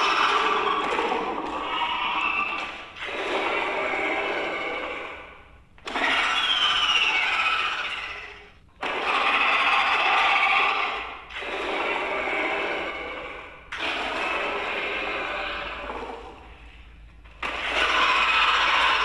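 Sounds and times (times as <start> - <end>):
person making raspy screeches: 0.0 - 3.8, 5.9 - 11.2, 17.5 - 19.0.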